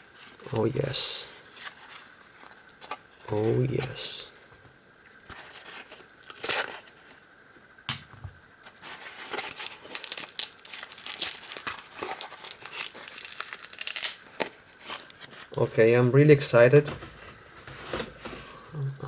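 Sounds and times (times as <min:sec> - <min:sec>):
packaging crinkling and tearing: 0:00.0 - 0:04.0, 0:05.3 - 0:07.2, 0:08.6 - 0:15.6
cardboard ripping: 0:05.4 - 0:07.0, 0:08.7 - 0:15.5.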